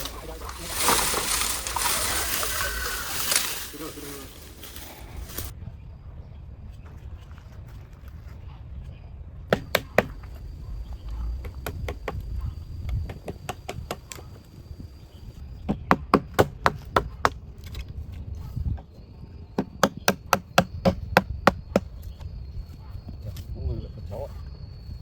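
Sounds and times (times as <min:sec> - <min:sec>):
blade chopping wood: 0:09.5 - 0:10.3.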